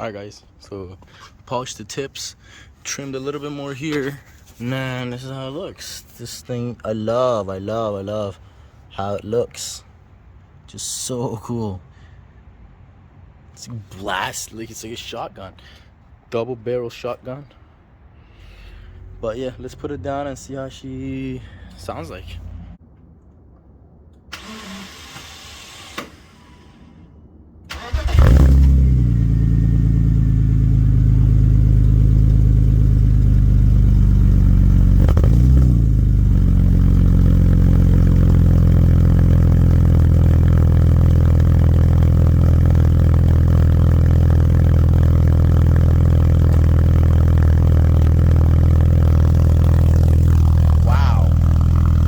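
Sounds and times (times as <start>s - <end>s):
car engine starting and idling: 24.0s - 52.0s
engine revving blip: 35.0s - 35.9s.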